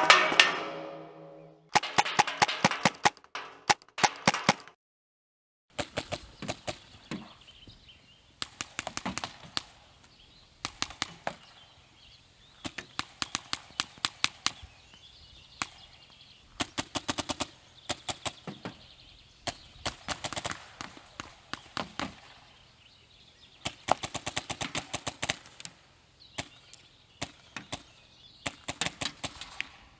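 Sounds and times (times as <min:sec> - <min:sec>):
paintball markers firing: 0:01.8 - 0:04.7.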